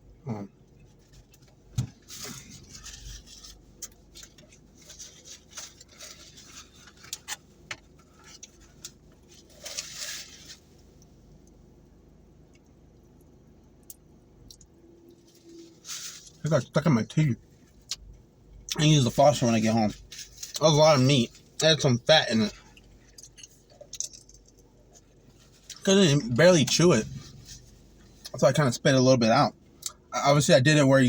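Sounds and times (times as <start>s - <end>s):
person chewing: 22.5s - 25.1s.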